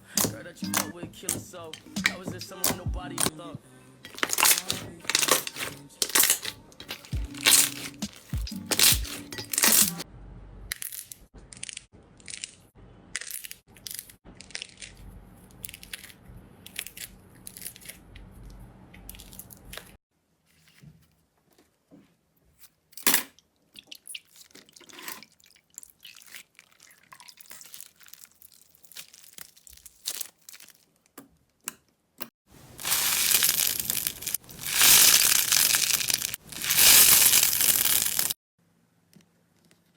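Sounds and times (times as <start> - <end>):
slime crackling and popping: 4.1 - 10.0, 32.6 - 38.4.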